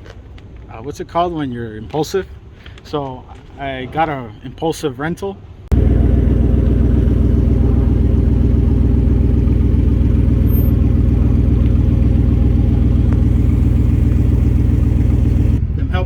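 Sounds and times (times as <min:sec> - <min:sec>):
engine running steadily: 0:05.7 - 0:16.0.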